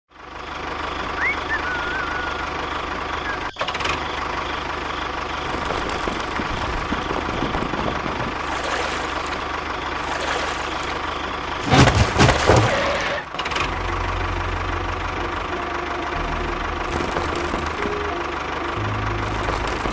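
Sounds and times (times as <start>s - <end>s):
small motor rattling drone: 0.2s - 11.6s, 12.7s - 19.9s.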